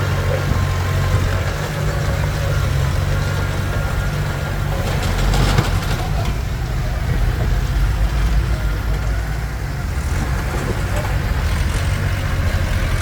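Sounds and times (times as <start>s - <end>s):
bulldozer diesel engine running: 0.0s - 13.0s
brief clatter: 4.7s - 9.1s.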